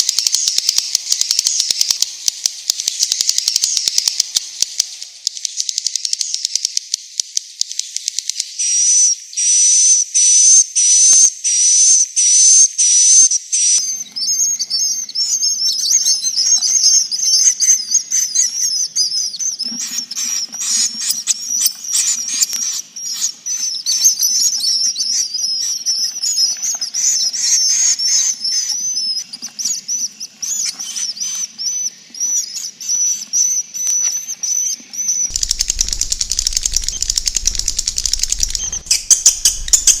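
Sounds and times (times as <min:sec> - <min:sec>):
chorus of twittering chirps: 0:00.0 - 0:40.0
buzzy whistling bird calls: 0:08.6 - 0:40.0
run of clicks: 0:35.3 - 0:40.0.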